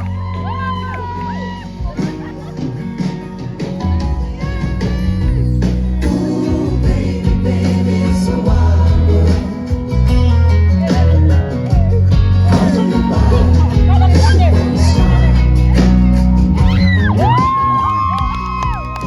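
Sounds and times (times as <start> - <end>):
live band playing: 0.0 - 19.0
person singing: 3.4 - 11.7, 12.3 - 16.0.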